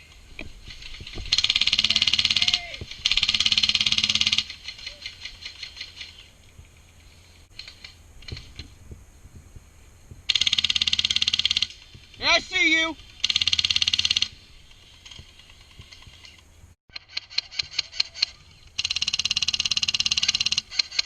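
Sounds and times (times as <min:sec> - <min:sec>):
faint clicks and rustling: 0:00.0 - 0:21.0
airsoft gun full-auto bursts: 0:01.3 - 0:04.6, 0:10.3 - 0:14.4, 0:16.9 - 0:21.0.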